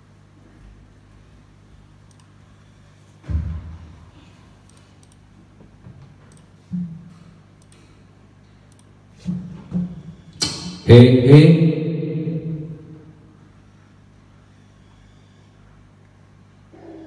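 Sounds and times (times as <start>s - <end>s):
pa system low hum: 0.0s - 17.0s
faint clicks: 2.0s - 2.3s, 4.6s - 5.2s, 7.6s - 7.9s, 8.7s - 8.9s.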